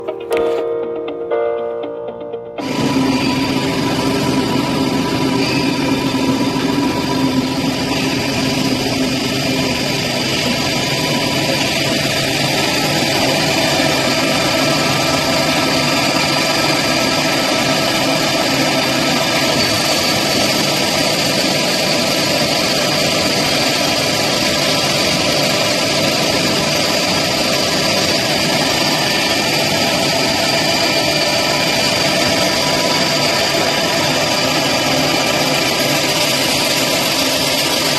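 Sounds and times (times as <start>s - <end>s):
deburring machine whining: 2.6s - 37.9s.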